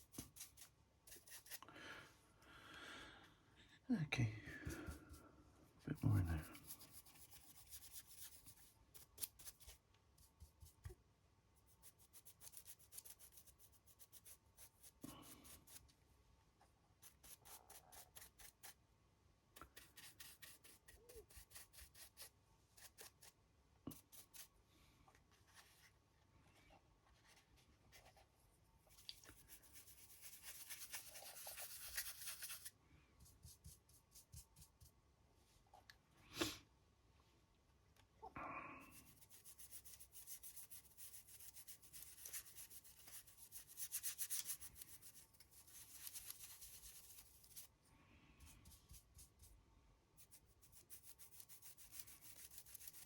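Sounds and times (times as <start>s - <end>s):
paintbrush scratching and dabbing: 0.0s - 1.6s, 6.0s - 11.0s, 11.6s - 15.9s, 28.9s - 35.0s, 38.9s - 47.8s, 48.4s - 49.6s, 50.2s - 53.0s
continuous rubbing: 29.2s - 35.0s.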